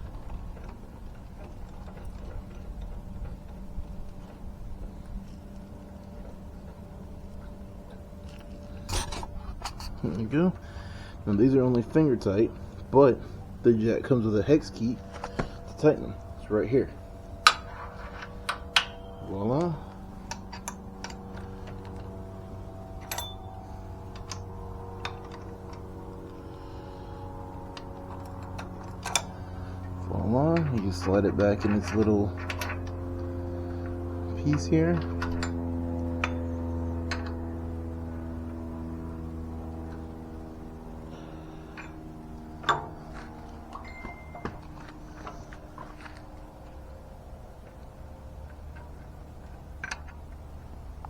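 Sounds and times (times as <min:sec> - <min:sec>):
steady low hum: 0:00.0 - 0:51.0
light metal clicks and taps: 0:27.6 - 0:29.4, 0:30.6 - 0:37.4, 0:41.1 - 0:46.8, 0:47.6 - 0:50.7
metal parts clicking and knocking: 0:41.2 - 0:46.8
metal clank: 0:42.6 - 0:45.4.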